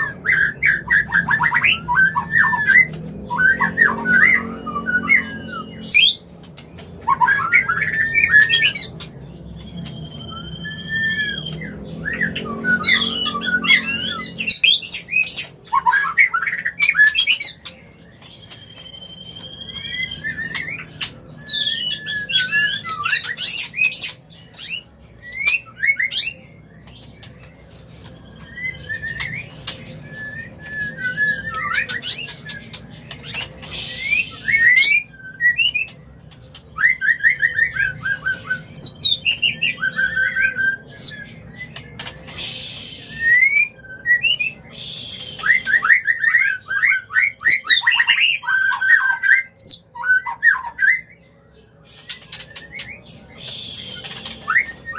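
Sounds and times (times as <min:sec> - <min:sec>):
bird whistles and trills: 0:00.0 - 0:54.9
harsh rasping bird notes: 0:27.4 - 0:35.9, 0:37.9 - 0:49.0, 0:51.8 - 0:54.9.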